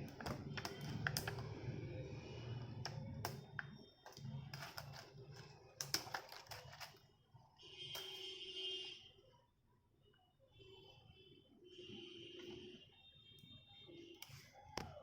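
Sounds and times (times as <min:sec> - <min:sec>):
hands clicking and tapping laptop: 0:00.0 - 0:01.6, 0:02.8 - 0:07.0.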